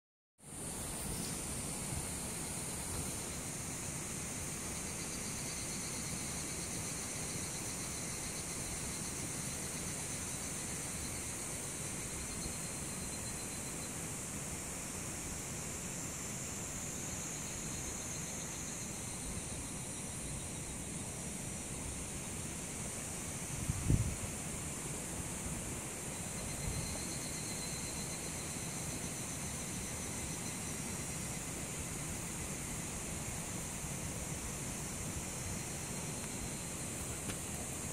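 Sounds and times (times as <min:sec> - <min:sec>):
background hiss: 0:00.4 - 0:37.9
cicadas calling in chorus: 0:00.5 - 0:37.9.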